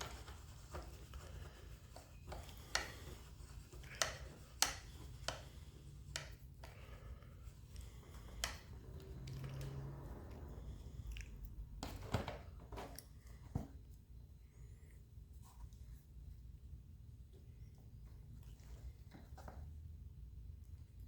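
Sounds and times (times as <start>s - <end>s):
faint low hum: 0.0s - 21.0s.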